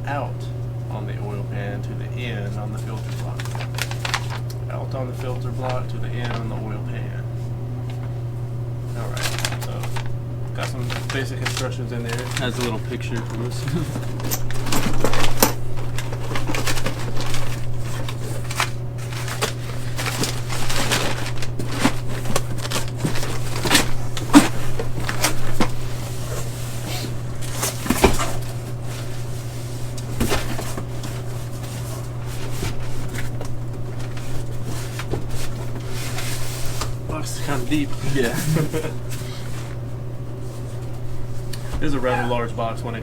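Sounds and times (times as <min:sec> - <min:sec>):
vending machine hum: 0:00.0 - 0:43.0
cardboard boxes rustling and knocking: 0:27.4 - 0:29.3, 0:30.0 - 0:39.7.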